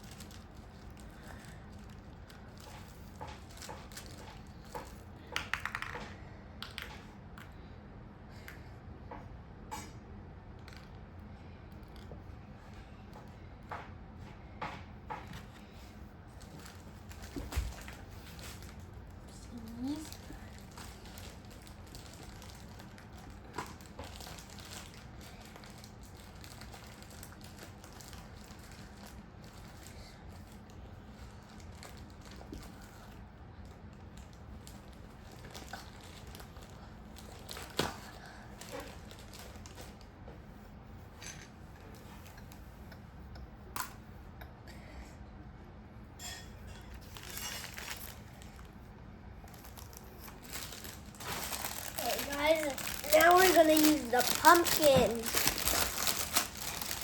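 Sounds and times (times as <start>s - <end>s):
rustling and crinkling: 0.0s - 6.0s, 11.8s - 42.9s, 46.2s - 57.0s
low room hum: 0.0s - 57.0s.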